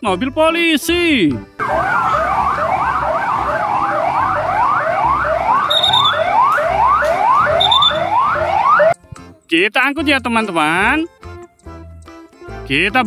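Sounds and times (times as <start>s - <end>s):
toy police siren: 1.6s - 9.0s
short high beeps: 5.6s - 6.3s, 7.6s - 8.1s.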